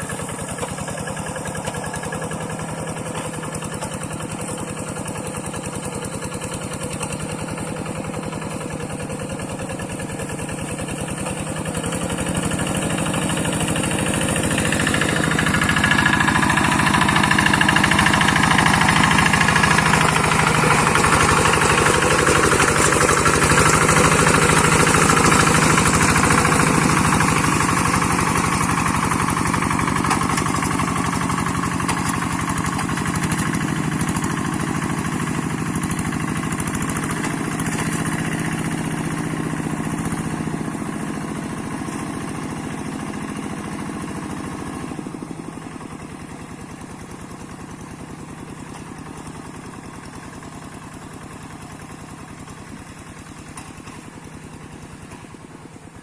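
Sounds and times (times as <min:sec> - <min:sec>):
tractor diesel engine running: 0:00.0 - 0:56.0.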